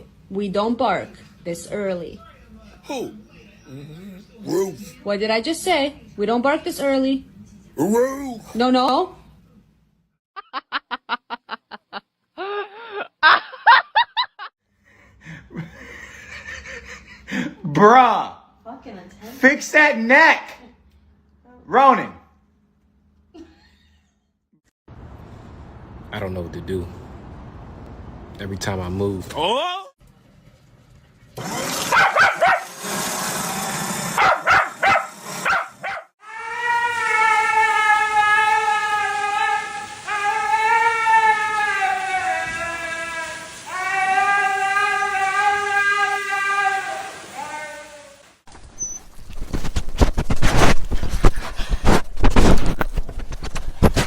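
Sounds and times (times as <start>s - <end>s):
dog howling: 3.7s - 5.0s, 36.2s - 49.0s
dog barking: 31.8s - 32.8s, 34.2s - 36.1s
dog yipping: 31.9s - 32.7s, 34.2s - 36.1s, 48.8s - 49.6s.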